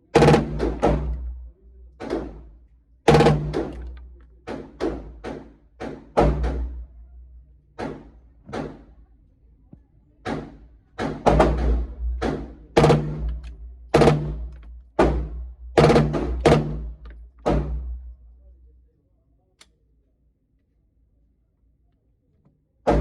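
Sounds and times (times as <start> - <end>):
pistol gunshots: 3.1 - 5.4.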